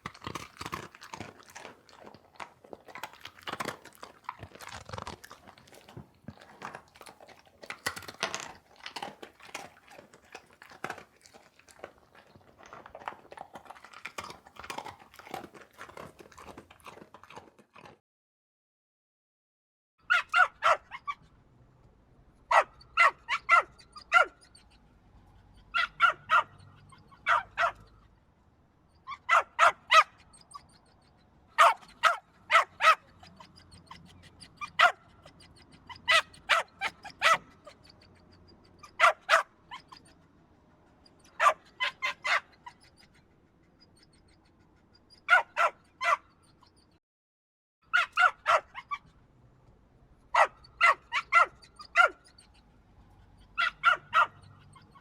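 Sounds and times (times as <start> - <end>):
dog barking: 20.1 - 21.2, 22.5 - 24.7, 25.7 - 28.0, 29.1 - 30.8, 31.6 - 37.8, 38.8 - 40.2, 41.2 - 42.9, 45.2 - 46.9, 47.9 - 49.1, 50.3 - 52.6, 53.6 - 55.0.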